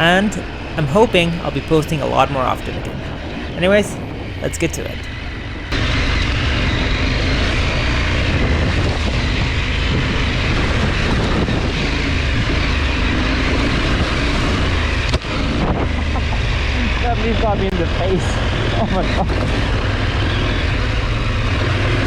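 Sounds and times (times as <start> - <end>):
road noise: 0.0 - 22.0
wind noise: 0.0 - 22.0
motorcycle engine running: 5.0 - 22.0.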